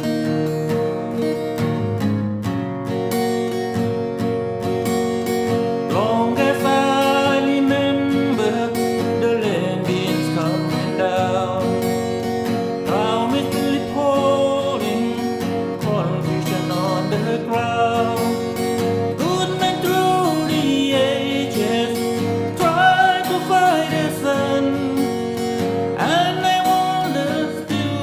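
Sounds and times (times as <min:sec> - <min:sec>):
acoustic guitar strumming: 0:00.0 - 0:28.0
person singing: 0:05.9 - 0:12.2, 0:12.8 - 0:28.0.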